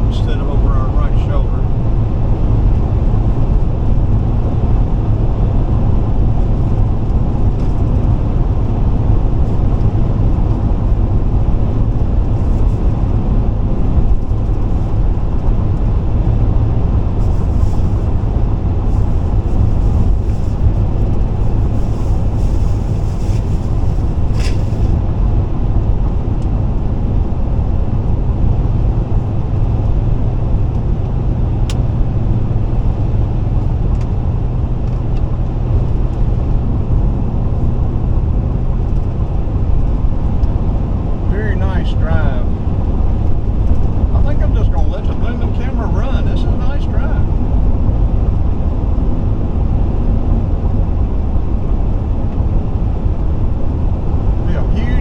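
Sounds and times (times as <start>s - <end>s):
car cabin road and engine rumble: 0.0s - 55.0s.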